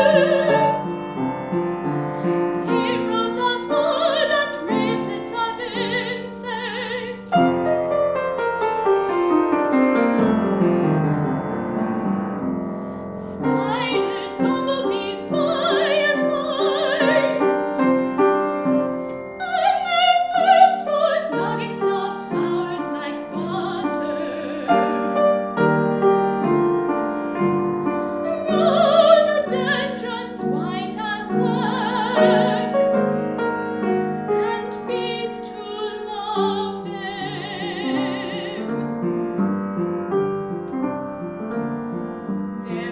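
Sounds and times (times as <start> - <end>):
woman singing with vibrato: 0.0 - 1.0, 2.6 - 7.6, 13.2 - 17.8, 19.4 - 25.2, 28.2 - 33.1, 34.4 - 38.8, 42.7 - 42.9
piano accompaniment: 0.0 - 42.9.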